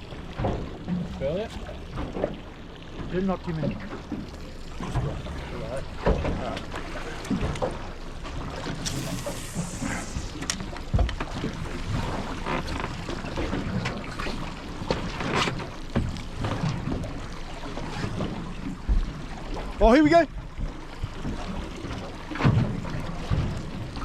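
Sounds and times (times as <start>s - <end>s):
knocks and clunks on boat: 0.0s - 9.2s, 9.8s - 24.0s
water sloshing against hull: 0.0s - 24.0s
brief hiss: 8.8s - 10.7s.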